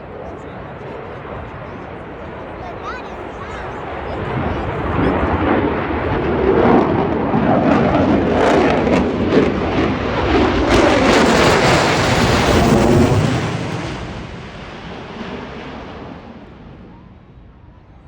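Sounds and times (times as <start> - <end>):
jet passing overhead: 0.0 - 18.0.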